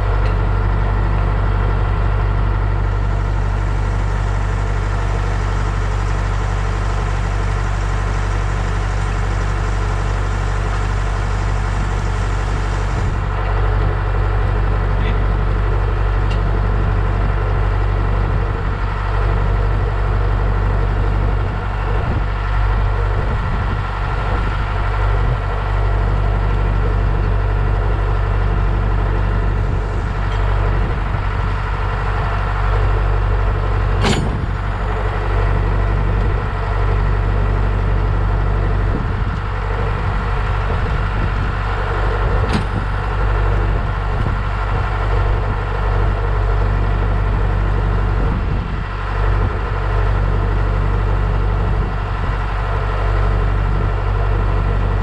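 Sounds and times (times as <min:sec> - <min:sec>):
engine running steadily: 0:00.0 - 0:55.0
sharp click: 0:34.0 - 0:34.5, 0:42.5 - 0:42.8.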